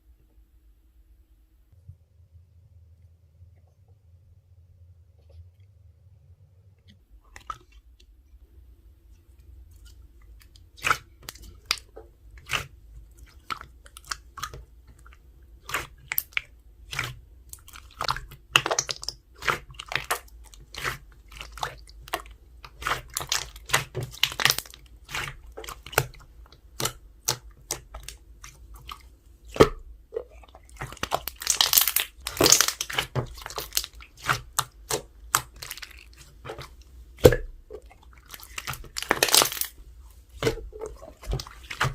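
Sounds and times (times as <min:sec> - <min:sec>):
slime squishing with sticky pops: 0:09.5 - 0:41.9.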